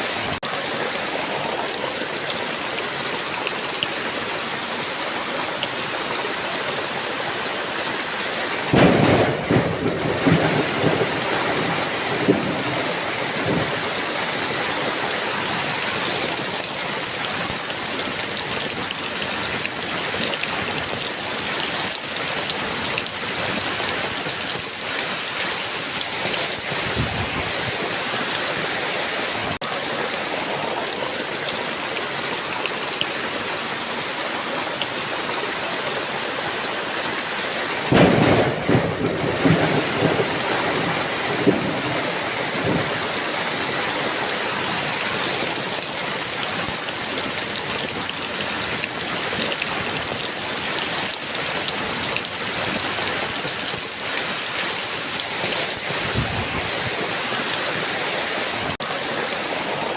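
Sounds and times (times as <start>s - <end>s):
heavy rain falling: 0.0s - 59.9s
thunderclap and rumbling: 8.7s - 14.0s, 26.5s - 27.9s, 37.9s - 43.2s, 55.8s - 57.0s.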